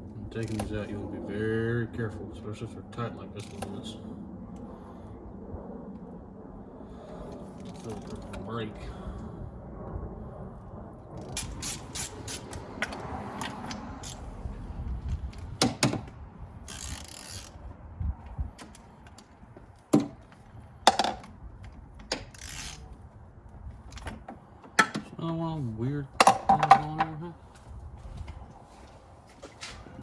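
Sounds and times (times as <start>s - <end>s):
ratchet wrench clicking: 11.4s - 12.6s, 13.4s - 14.2s, 16.7s - 17.5s.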